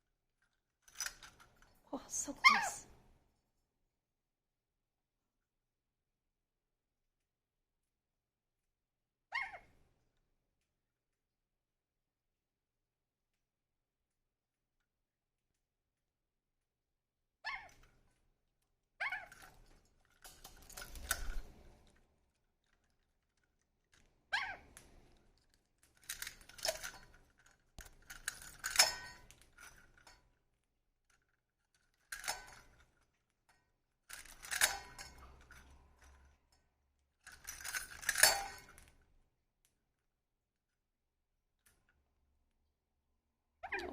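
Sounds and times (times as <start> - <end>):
small hard objects clinking: 25.9 - 30.2.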